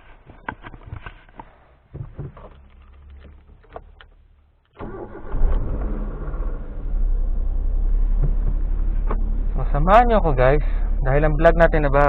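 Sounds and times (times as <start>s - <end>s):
car engine starting: 2.3s - 12.0s.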